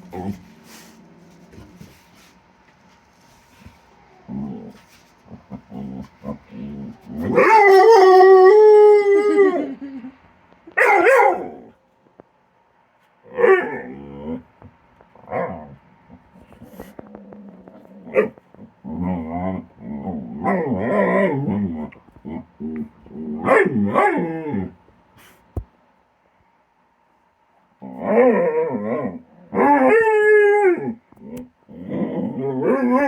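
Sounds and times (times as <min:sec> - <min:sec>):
dog play-growling: 0:03.4 - 0:07.4, 0:13.6 - 0:23.4, 0:31.2 - 0:33.0.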